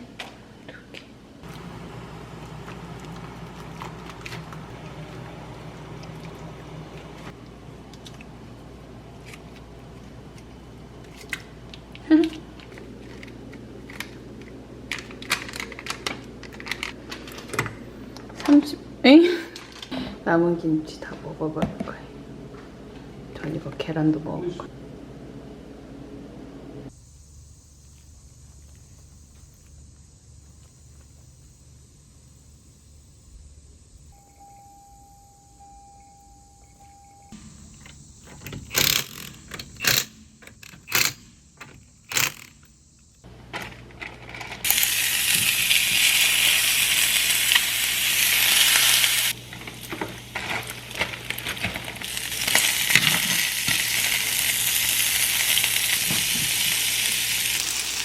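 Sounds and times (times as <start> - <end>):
food sizzling in a frying pan: 44.7 - 58.0.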